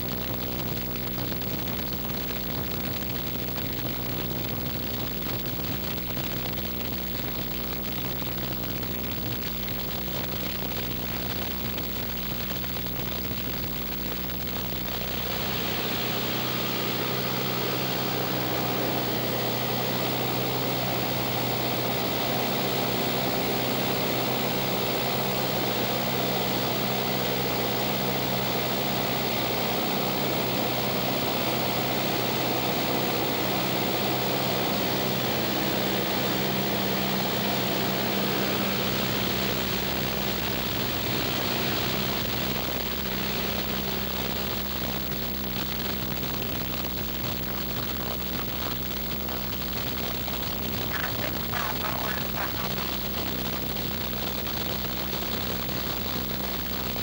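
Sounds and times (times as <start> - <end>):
aircraft engine and propeller droning: 14.2 - 57.0.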